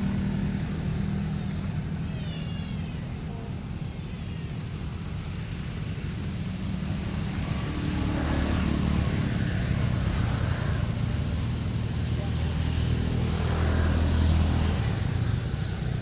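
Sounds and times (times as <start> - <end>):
vehicle engine rumble: 0.0 - 16.0.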